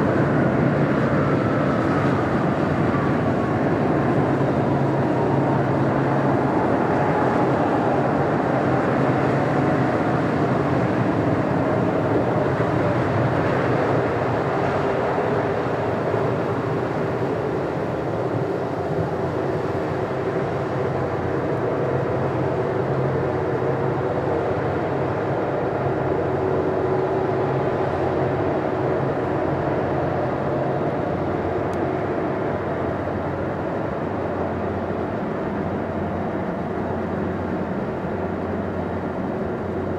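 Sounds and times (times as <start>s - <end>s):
jet engines whining: 0.0s - 21.6s.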